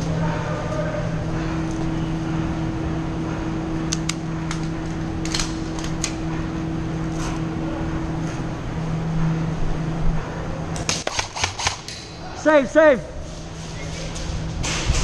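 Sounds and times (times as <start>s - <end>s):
steady mechanical hum: 0.0s - 15.0s
airsoft guns firing: 10.8s - 12.0s.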